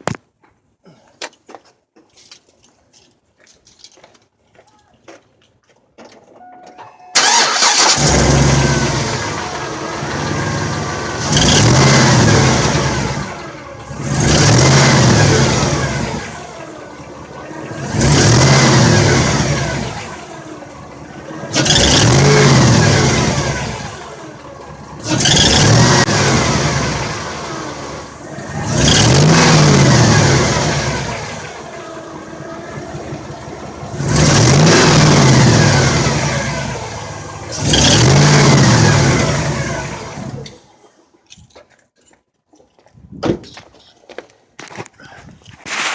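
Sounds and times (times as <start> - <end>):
car engine revving: 7.2 - 40.6.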